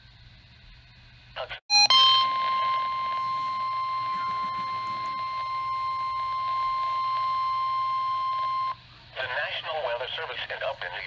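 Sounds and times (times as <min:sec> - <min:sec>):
steady electronic warning tone: 0:01.7 - 0:08.9.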